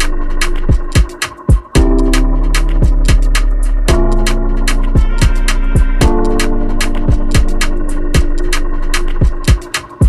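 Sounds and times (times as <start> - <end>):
held synth chords: 0.0 - 10.0
hi-hat ticks: 0.0 - 10.0
deep kick drums: 0.6 - 6.4, 7.0 - 8.5, 9.1 - 9.7.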